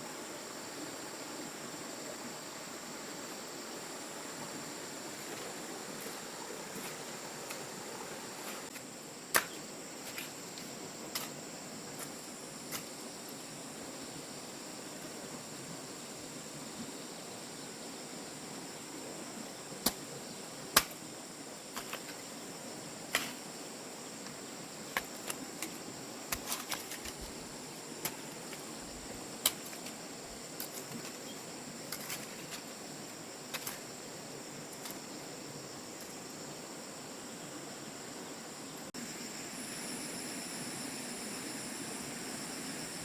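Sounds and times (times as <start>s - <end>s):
insects buzzing: 0.0s - 43.0s.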